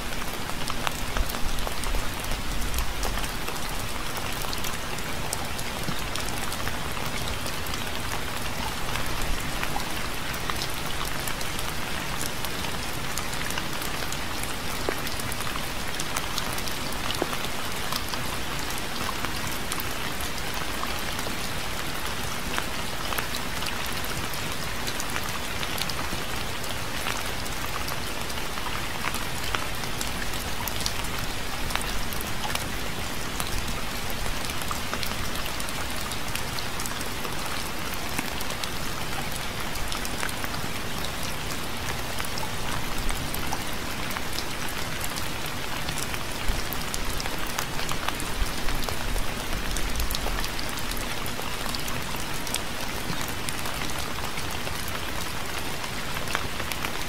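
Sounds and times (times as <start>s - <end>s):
rain falling: 0.0s - 57.0s.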